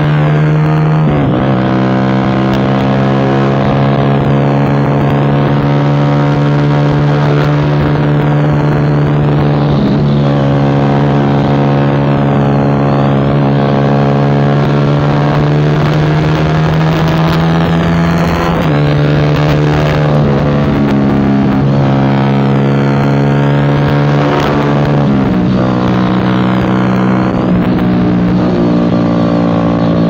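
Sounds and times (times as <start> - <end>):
motorcycle engine cruising: 0.0 - 30.0.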